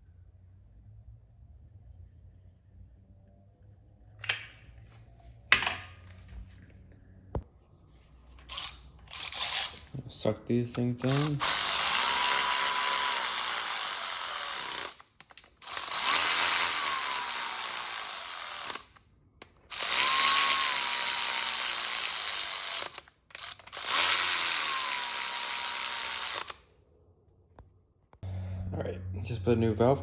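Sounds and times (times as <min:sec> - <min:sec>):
power ratchet rattling: 0:08.4 - 0:09.9, 0:10.8 - 0:26.6.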